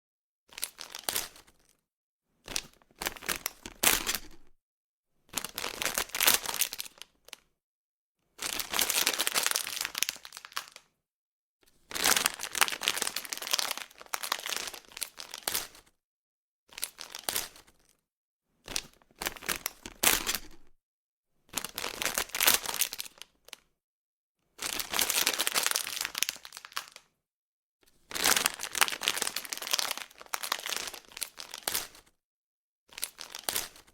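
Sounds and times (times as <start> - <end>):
plastic bag crinkling: 12.0 - 15.5, 24.9 - 27.0, 28.2 - 32.0.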